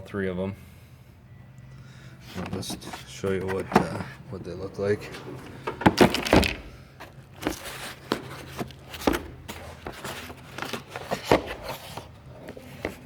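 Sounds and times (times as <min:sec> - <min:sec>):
tools clattering in drawer: 0:05.0 - 0:06.7.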